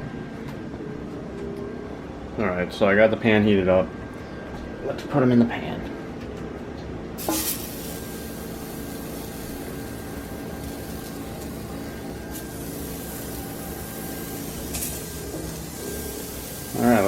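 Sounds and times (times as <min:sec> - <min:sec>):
mushrooms sizzling in frying pan: 0:07.2 - 0:17.0.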